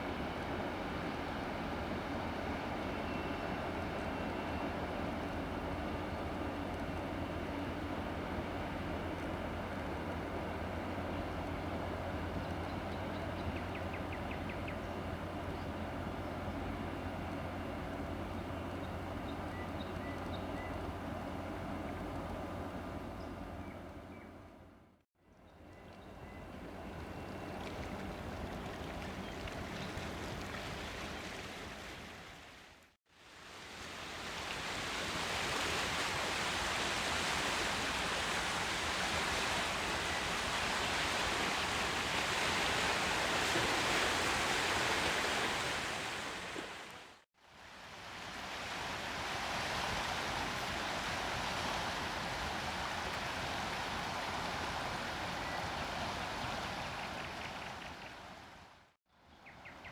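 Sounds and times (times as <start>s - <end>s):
river water rushing: 33.2s - 58.8s.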